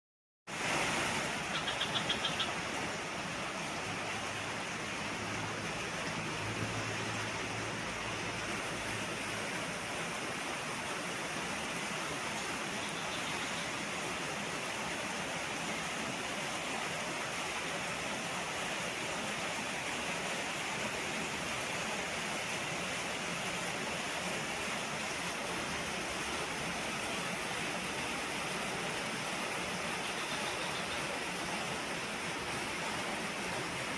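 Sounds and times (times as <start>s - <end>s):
heavy rain falling: 20.8s - 33.9s.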